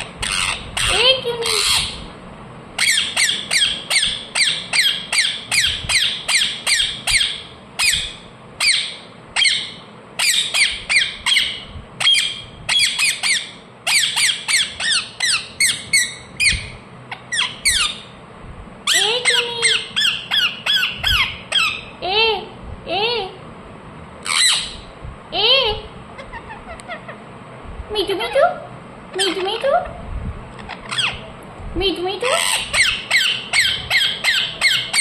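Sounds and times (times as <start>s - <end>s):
parrot calling: 0.0s - 2.1s, 2.8s - 18.2s, 18.8s - 22.0s, 24.2s - 24.9s, 26.2s - 27.3s, 29.1s - 30.0s, 30.6s - 31.3s, 32.2s - 35.0s.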